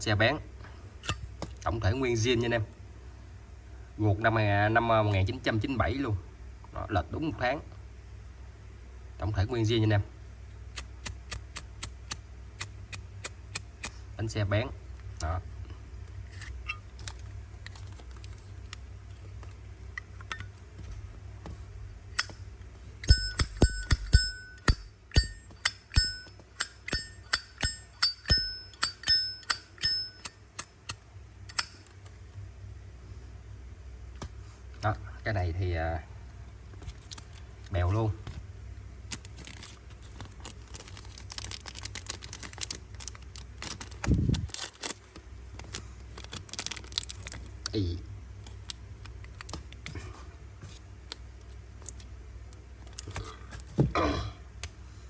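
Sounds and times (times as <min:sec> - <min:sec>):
metal lighter clicking: 0:22.2 - 0:22.4, 0:23.0 - 0:31.8
metallic lid ring: 0:23.0 - 0:30.7, 0:31.5 - 0:31.8.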